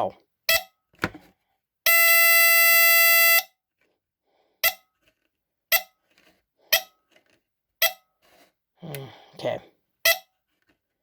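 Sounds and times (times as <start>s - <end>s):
smoke alarm buzzing: 1.9s - 3.5s.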